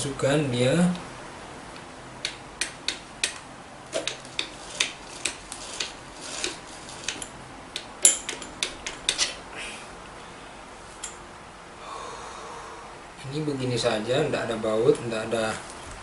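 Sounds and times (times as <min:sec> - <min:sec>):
metallic clicks of drill parts: 0:04.0 - 0:09.4.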